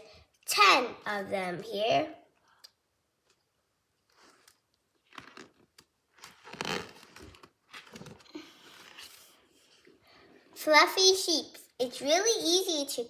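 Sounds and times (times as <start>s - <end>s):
rustling and clicking handling noises: 4.1s - 9.1s
short crackles: 4.1s - 9.4s.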